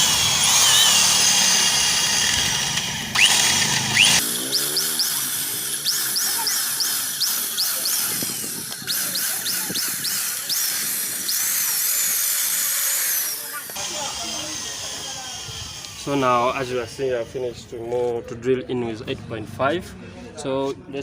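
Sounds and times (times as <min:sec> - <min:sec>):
electric drill boring into metal: 0:00.0 - 0:17.5
short rising squeaks: 0:03.2 - 0:10.7.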